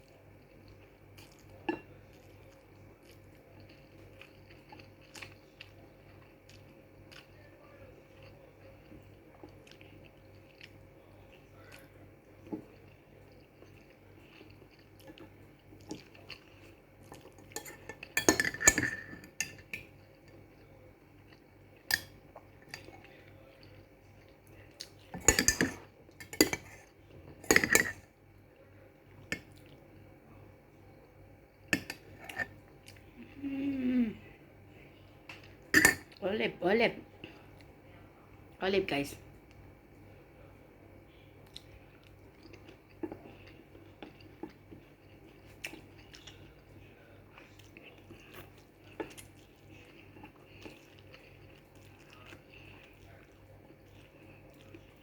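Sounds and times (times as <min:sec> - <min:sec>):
utensils clinking against a dish: 0:17.4 - 0:19.9, 0:25.1 - 0:28.1, 0:31.7 - 0:32.5, 0:35.8 - 0:36.1.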